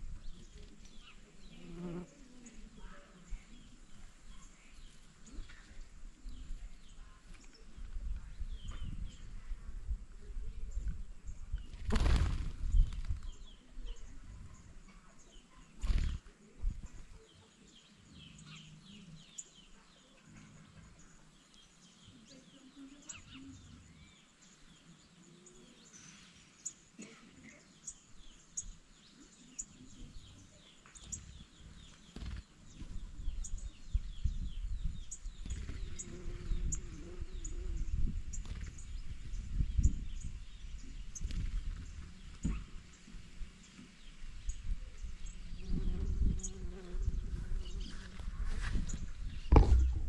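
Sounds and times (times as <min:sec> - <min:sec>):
low rumbling knocking noise: 0:49.5 - 0:50.0.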